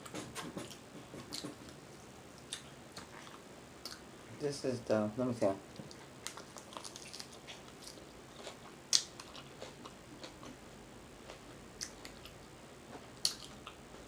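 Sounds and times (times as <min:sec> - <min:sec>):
person chewing: 0:00.0 - 0:01.8, 0:02.4 - 0:04.0, 0:05.7 - 0:10.6, 0:11.2 - 0:14.0.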